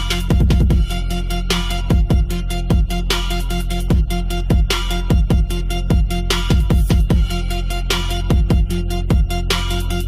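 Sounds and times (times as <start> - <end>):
deep kick drums: 0.2 - 1.1, 1.8 - 3.1, 3.9 - 7.4, 8.3 - 9.4.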